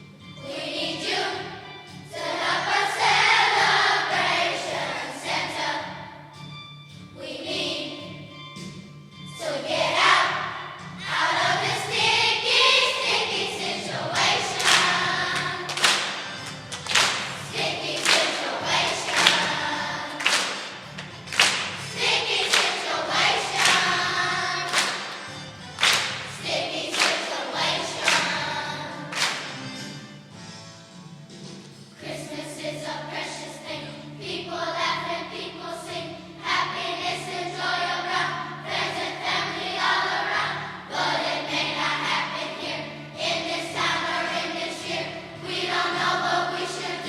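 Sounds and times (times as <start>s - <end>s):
children's choir singing: 0.4s - 6.3s, 7.2s - 8.4s, 9.4s - 29.9s, 32.0s - 47.0s
instrumental accompaniment with beat: 14.2s - 31.9s.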